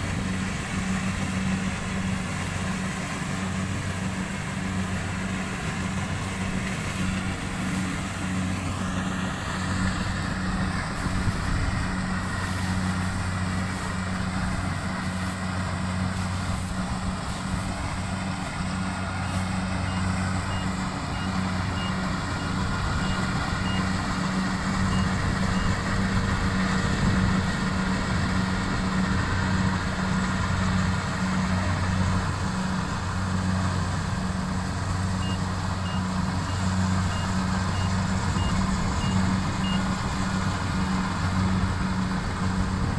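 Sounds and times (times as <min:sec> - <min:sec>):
combine harvester engine droning: 0:00.0 - 0:42.9
faint regular beeps: 0:19.2 - 0:24.0, 0:35.2 - 0:39.9.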